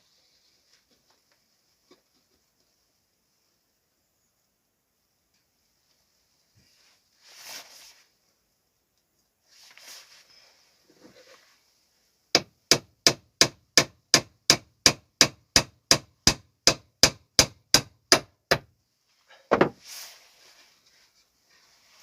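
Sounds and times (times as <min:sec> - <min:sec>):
hammer striking nail into wood: 0:12.4 - 0:18.7.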